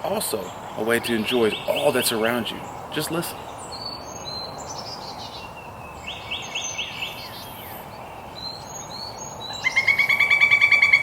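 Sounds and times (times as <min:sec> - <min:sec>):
birds calling: 0:00.0 - 0:11.0
steady background hiss: 0:00.0 - 0:11.0
woodpecker rattling call: 0:08.5 - 0:11.0.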